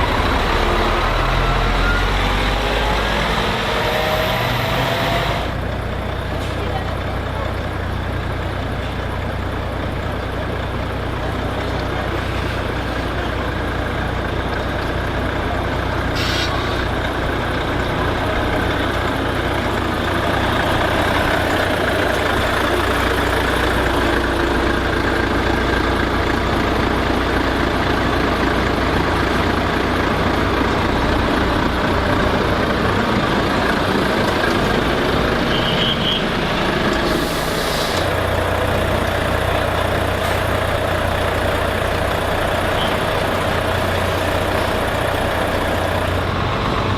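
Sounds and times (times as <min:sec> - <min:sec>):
heavy truck engines running: 0:00.0 - 0:46.9
short air hiss: 0:16.2 - 0:16.8, 0:37.1 - 0:38.0.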